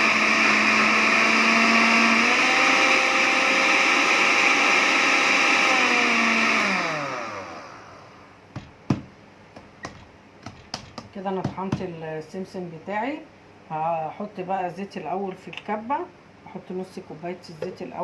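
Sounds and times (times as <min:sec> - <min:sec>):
blender grinder whining: 0:00.0 - 0:08.3
sharp knocks: 0:08.5 - 0:11.9.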